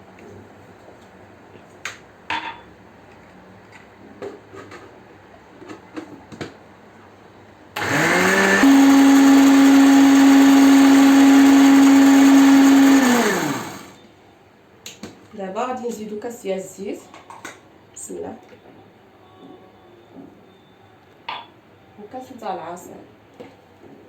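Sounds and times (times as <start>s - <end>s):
electric blender whining: 7.8s - 14.0s.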